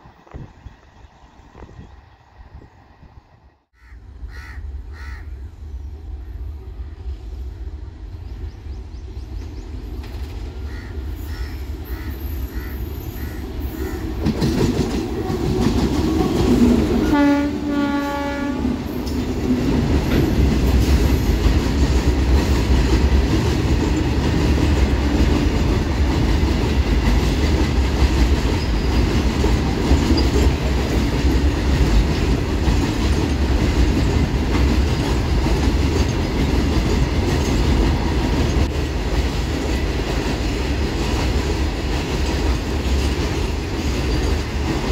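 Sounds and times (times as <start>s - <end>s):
train passing with heavy rumble: 0.0s - 44.9s
wheels clacking over rail joints: 13.8s - 17.2s, 18.9s - 44.9s
locomotive horn blast: 15.1s - 19.0s.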